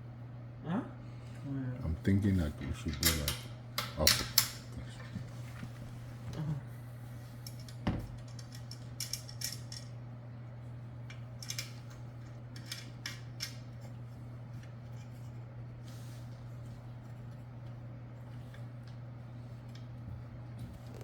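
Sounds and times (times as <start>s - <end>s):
metal parts clinking: 8.3s - 9.9s.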